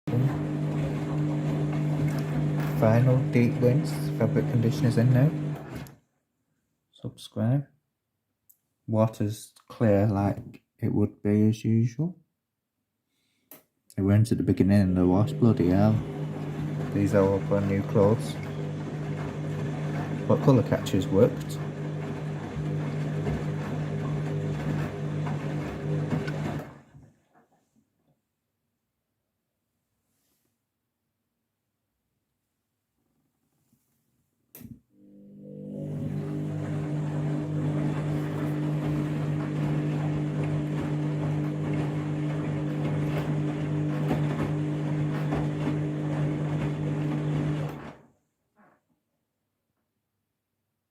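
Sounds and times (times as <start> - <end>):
washing machine motor hum: 0.1 - 5.9, 14.6 - 27.0, 35.0 - 48.0.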